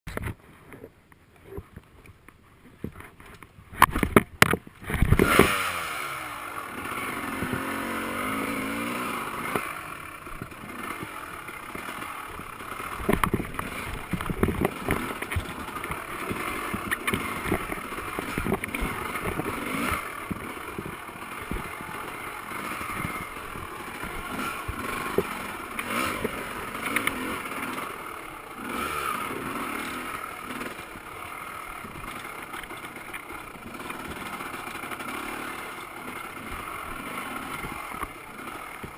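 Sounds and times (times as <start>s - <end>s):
bike knocks and rattles: 2.8s - 5.7s, 7.2s - 27.8s
dirt bike engine revving: 4.8s - 38.9s.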